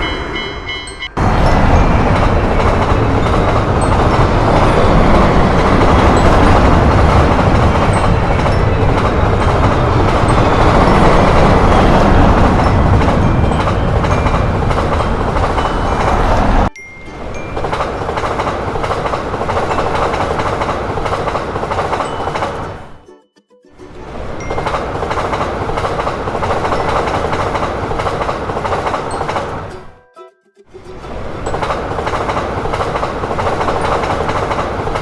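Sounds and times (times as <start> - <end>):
electric train passing at speed: 0.0 - 23.1, 23.8 - 30.0, 30.8 - 35.0.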